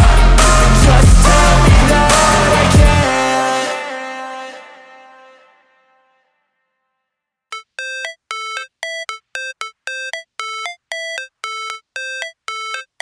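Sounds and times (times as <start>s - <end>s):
synthesizer chord stabs: 0.0s - 3.4s.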